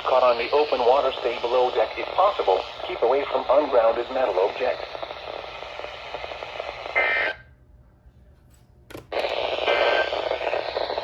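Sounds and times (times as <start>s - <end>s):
radio click: 0.0s - 7.4s, 8.9s - 11.0s
harsh electronic buzz: 9.2s - 11.0s.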